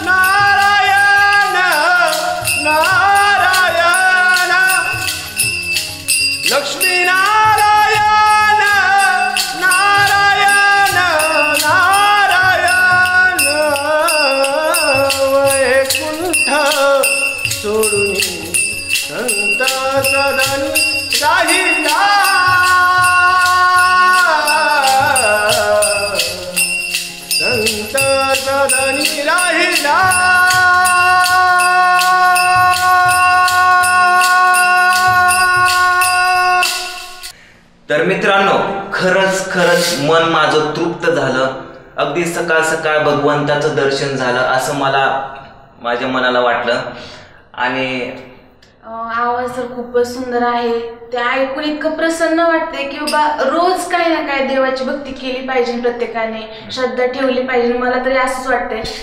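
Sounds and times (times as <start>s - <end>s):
man singing devotional song: 0.0s - 37.3s, 38.4s - 41.1s
rattling percussion beat: 0.0s - 37.4s, 52.8s - 54.0s.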